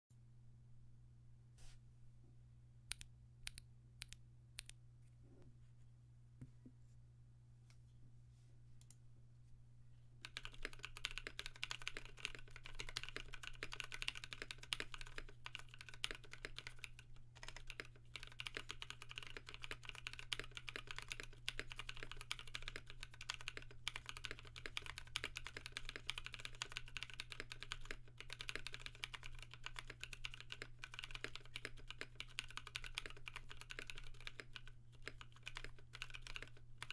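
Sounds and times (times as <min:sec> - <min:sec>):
low steady hum: 0:00.1 - 0:36.9
mechanical keyboard typing: 0:10.2 - 0:36.9.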